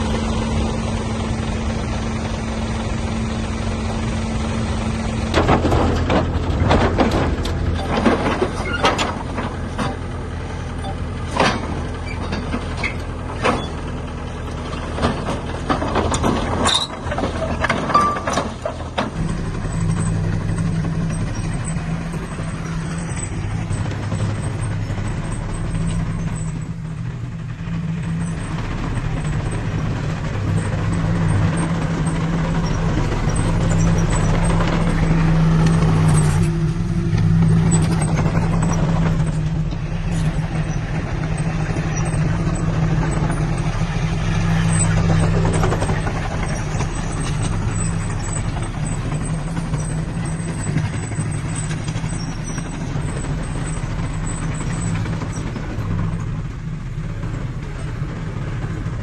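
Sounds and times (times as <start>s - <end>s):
heavy diesel engine running: 0.0s - 59.0s
clanking knocks: 5.3s - 10.1s, 14.9s - 25.1s.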